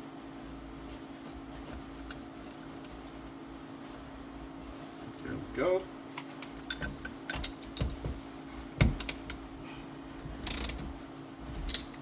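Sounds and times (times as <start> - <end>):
seat belt hardware clicking: 8.8 - 9.4, 10.2 - 10.9.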